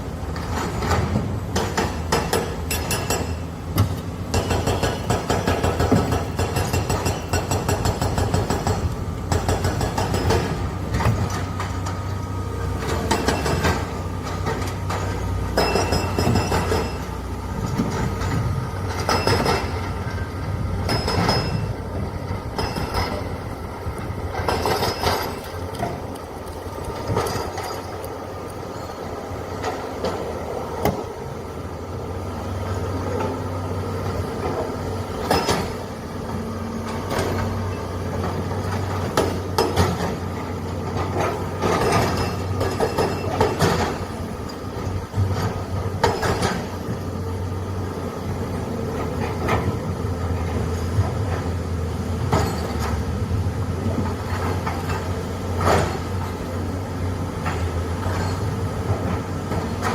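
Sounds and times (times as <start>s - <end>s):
excavator diesel engine running: 0.0s - 59.9s
sharp metallic clanks: 0.4s - 10.6s, 14.9s - 21.8s, 22.4s - 23.5s.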